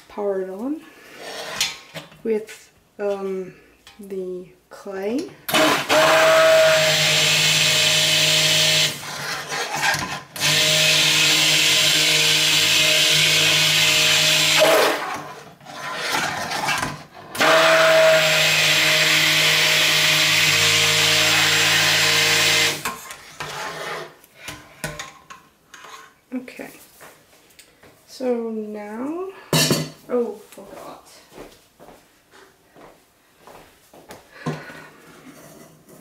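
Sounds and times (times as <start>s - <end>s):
electric stick blender running: 5.5s - 16.6s, 17.4s - 22.9s.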